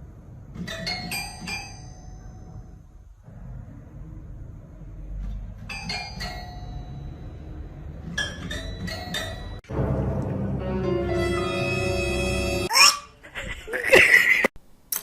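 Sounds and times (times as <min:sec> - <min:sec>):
music: 0:09.6 - 0:12.7.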